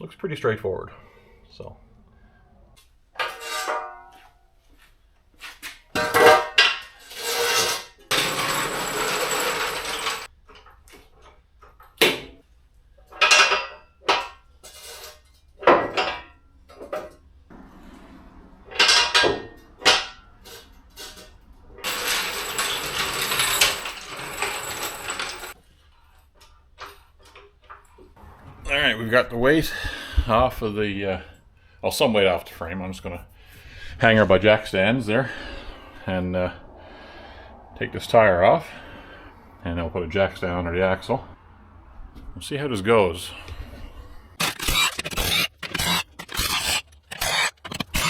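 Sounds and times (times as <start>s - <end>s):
metal tools clanking: 7.6s - 10.3s, 21.8s - 25.6s
steady rushing noise: 33.7s - 39.8s.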